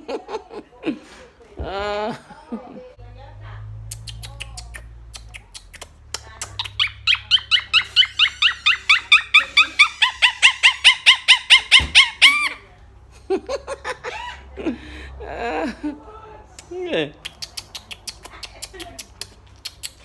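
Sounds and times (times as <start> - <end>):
parrot squawking: 6.2 - 12.7.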